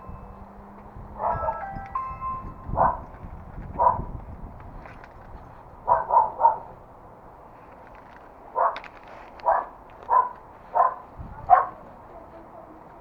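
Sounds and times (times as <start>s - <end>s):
dog barking: 1.2s - 1.6s, 2.8s - 3.1s, 3.8s - 4.1s, 5.8s - 6.8s, 8.6s - 11.8s.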